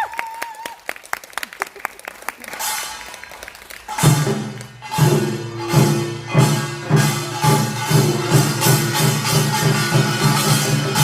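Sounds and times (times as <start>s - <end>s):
percussion ensemble playing: 2.4s - 11.0s.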